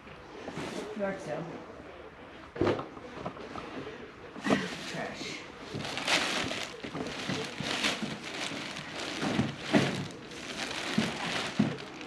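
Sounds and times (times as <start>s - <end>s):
clothes and bags rustling: 4.4s - 12.0s.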